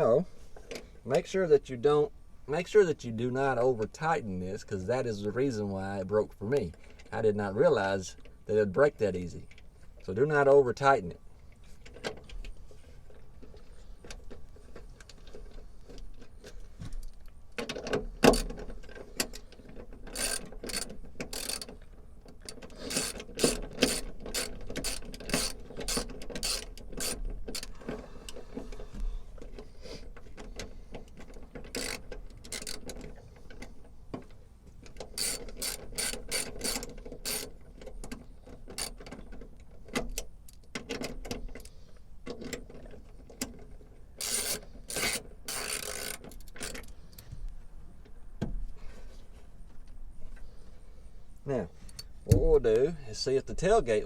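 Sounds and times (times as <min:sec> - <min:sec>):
ratchet wrench clicking: 0:20.0 - 0:21.7, 0:22.7 - 0:27.7, 0:31.7 - 0:33.0, 0:35.1 - 0:37.6, 0:38.7 - 0:39.1, 0:44.2 - 0:46.9.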